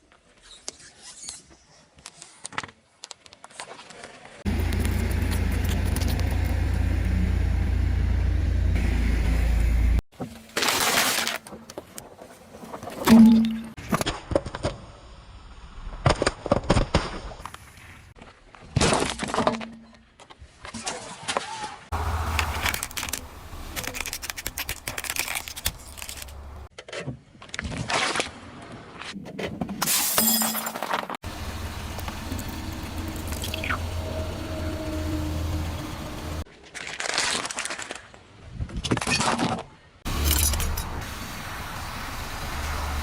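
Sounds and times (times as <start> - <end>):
objects cracking under car tyre: 22.0 - 26.8.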